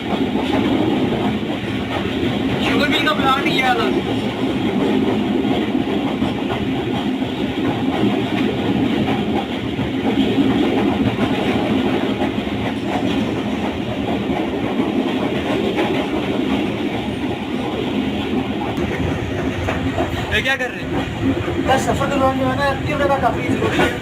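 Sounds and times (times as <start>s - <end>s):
train rumble: 0.0s - 24.0s.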